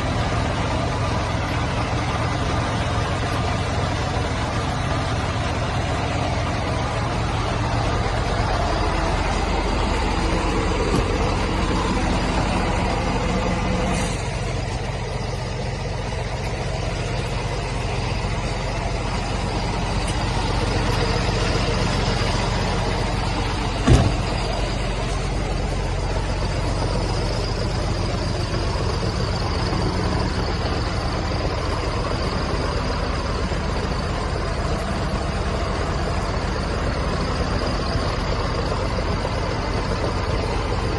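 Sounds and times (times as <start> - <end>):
diesel truck engine idling: 0.0 - 40.9
sharp knock: 23.8 - 24.3.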